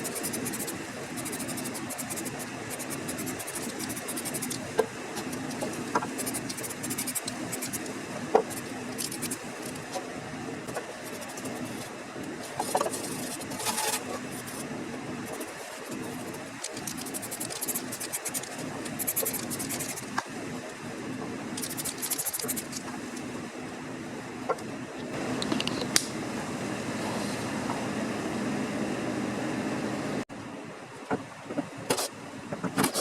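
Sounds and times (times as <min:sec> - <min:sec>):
fine rapid scraping on metal: 0:11.0 - 0:14.6.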